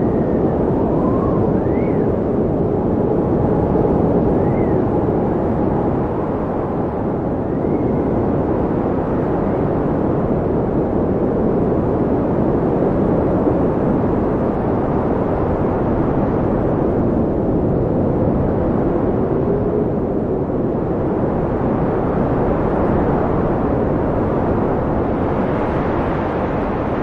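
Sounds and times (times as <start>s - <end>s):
faint whistling tones: 0.5s - 2.2s, 4.2s - 5.2s.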